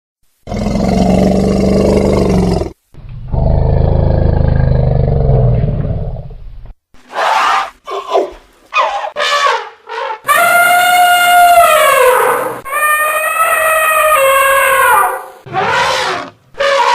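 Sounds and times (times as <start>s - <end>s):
elephant roaring: 0.5s - 6.2s, 10.3s - 16.9s.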